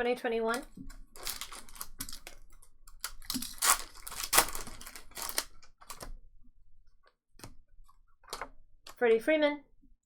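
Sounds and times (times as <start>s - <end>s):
wrapper ripping: 1.1s - 6.1s
card pack wrappers crinkling: 1.1s - 6.2s.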